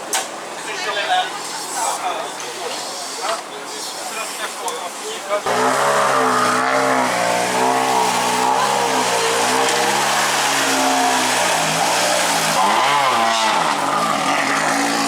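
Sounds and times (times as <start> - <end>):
rally car engine revving hard: 5.5 - 15.0.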